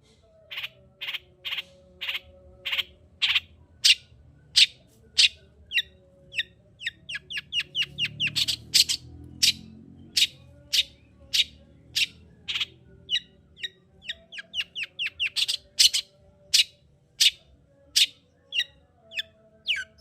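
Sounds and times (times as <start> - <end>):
bird harsh rasping calls: 4.6 - 17.4.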